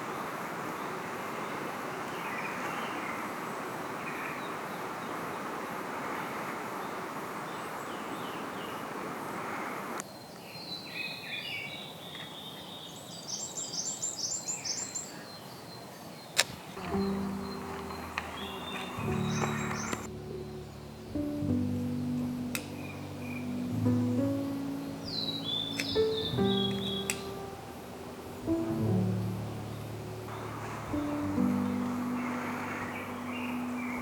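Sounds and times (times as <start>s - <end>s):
small birds singing: 0.0s - 5.5s, 10.0s - 34.0s
sharp click: 22.5s - 23.0s, 25.7s - 27.5s.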